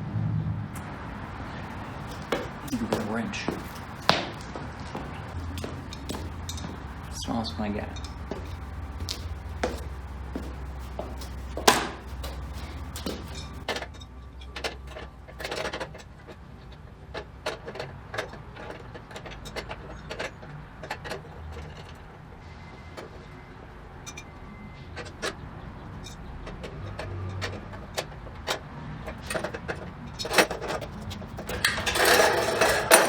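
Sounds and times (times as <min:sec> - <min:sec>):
miter saw clicks and rattles: 0:29.1 - 0:33.0.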